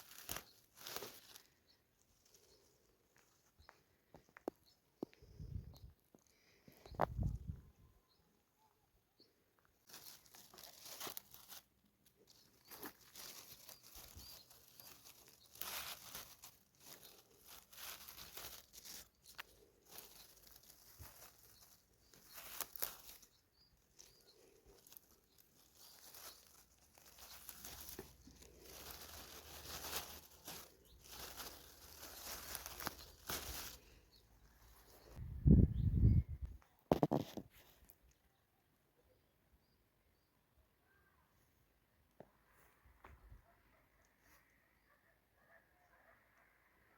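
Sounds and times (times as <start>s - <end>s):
rustling and crinkling: 0.0s - 7.9s, 9.2s - 35.3s, 36.2s - 38.2s.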